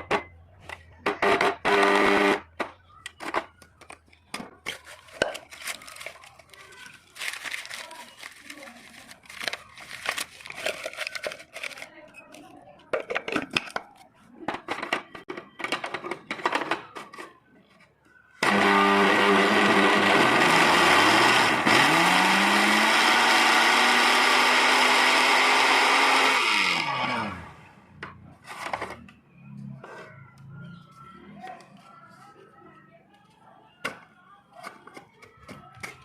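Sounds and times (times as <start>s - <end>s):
mixer grinder grinding paper: 1.2s - 2.5s, 4.7s - 11.9s, 18.4s - 27.6s
handling clicks and crinkling: 2.8s - 18.2s.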